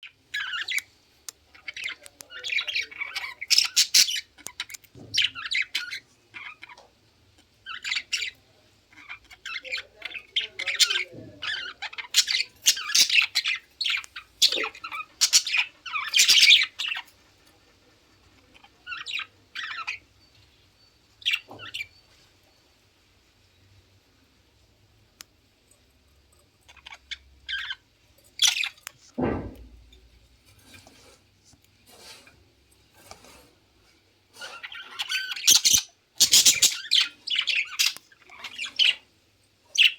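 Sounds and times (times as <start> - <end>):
pet bird squawking and chirping: 0.0 - 0.9, 1.5 - 6.8, 7.6 - 17.2, 18.4 - 20.1, 26.7 - 28.8, 34.4 - 39.0.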